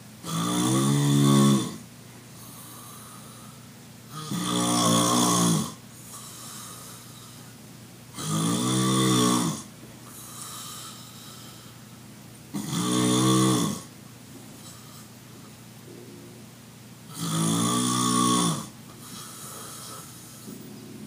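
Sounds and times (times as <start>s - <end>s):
person snoring loudly: 0.2s - 1.8s, 4.1s - 7.3s, 8.2s - 11.6s, 12.5s - 13.9s, 17.1s - 20.5s
quiet breathing: 2.3s - 3.8s, 5.8s - 7.6s, 10.0s - 12.0s, 14.4s - 16.4s, 18.8s - 21.0s.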